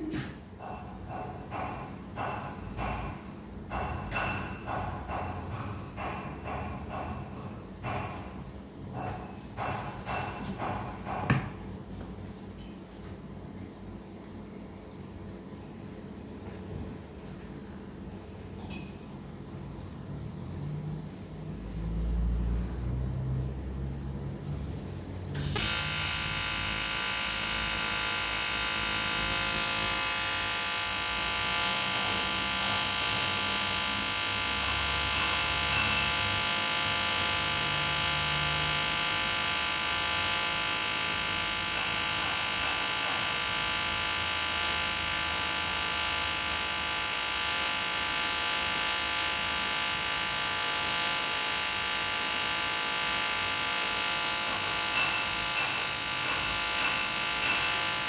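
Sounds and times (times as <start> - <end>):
welding arc buzzing: 25.3 - 58.0.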